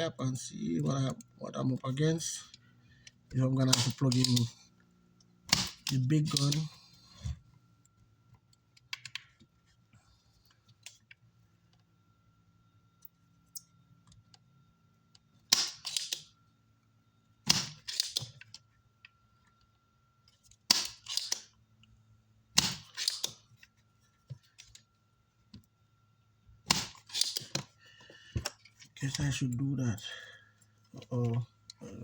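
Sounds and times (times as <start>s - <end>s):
faint steady hum: 0.0s - 32.0s
desoldering pump snapping: 3.5s - 4.5s, 5.5s - 6.7s, 22.6s - 23.4s, 26.7s - 27.7s.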